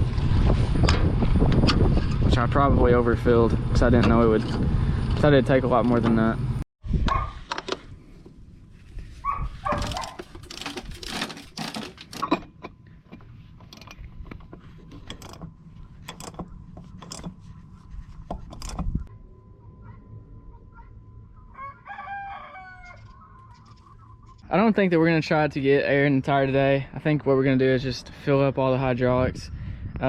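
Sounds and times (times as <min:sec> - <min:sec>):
rooster crowing: 0:21.4 - 0:23.4.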